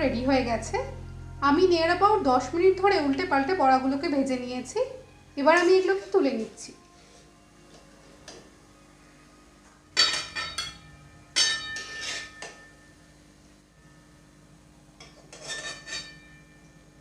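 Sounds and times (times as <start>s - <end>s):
metal utensils clinking on cookware: 10.0s - 10.8s, 11.4s - 12.6s, 15.0s - 16.4s.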